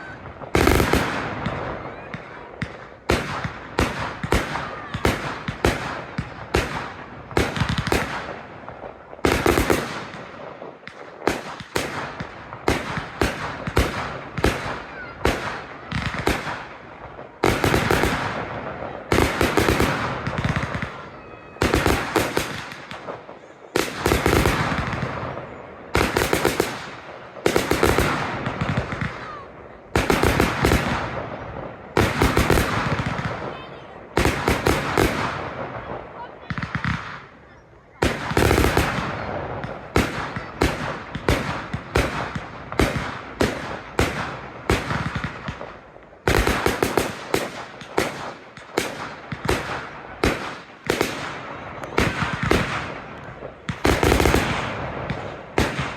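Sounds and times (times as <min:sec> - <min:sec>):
firework bangs and crackle: 0:00.0 - 0:55.9.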